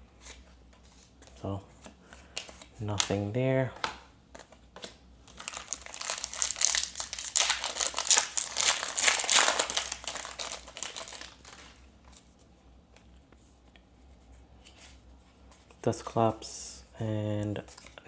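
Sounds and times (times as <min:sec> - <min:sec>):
foil wrapper crinkling: 0:05.3 - 0:11.8.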